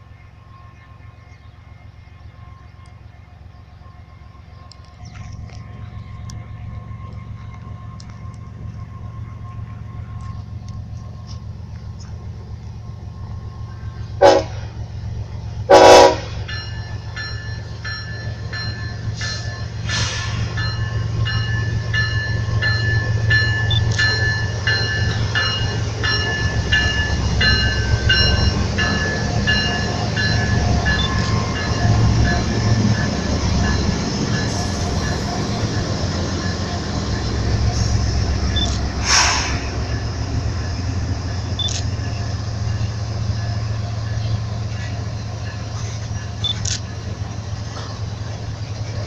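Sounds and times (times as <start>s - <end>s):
freight train rumbling past: 0.0s - 49.0s
locomotive horn blasts: 14.2s - 14.8s, 15.7s - 16.5s.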